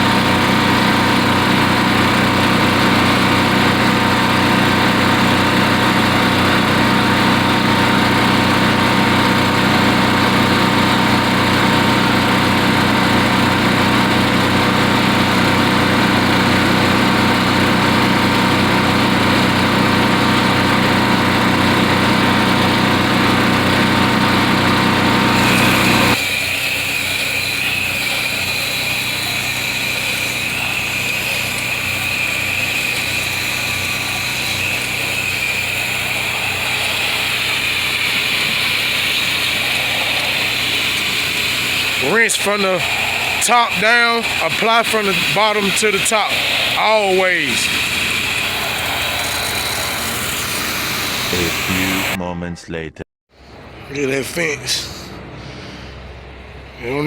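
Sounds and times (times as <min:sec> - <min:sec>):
pressure washer engine: 0:00.0 - 0:52.2
high whine: 0:24.0 - 0:54.8
spray hiss: 0:25.4 - 0:52.2.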